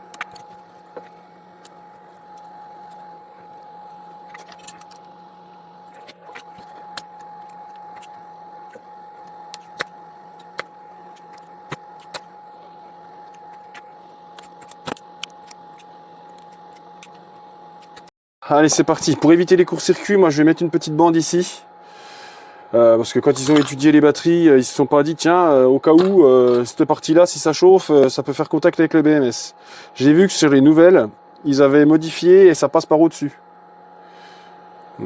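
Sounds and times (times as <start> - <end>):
faint steady whine: 0.0 - 35.0.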